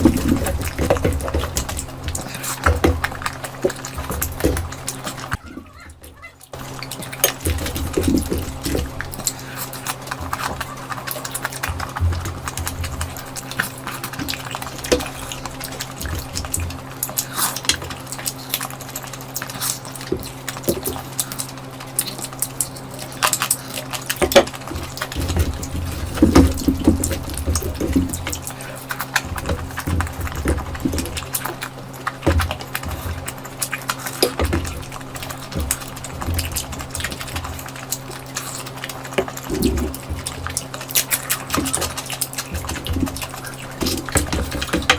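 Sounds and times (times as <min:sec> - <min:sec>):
low hum: 0:00.0 - 0:44.9
wet chewing and lip smacks: 0:00.0 - 0:44.9.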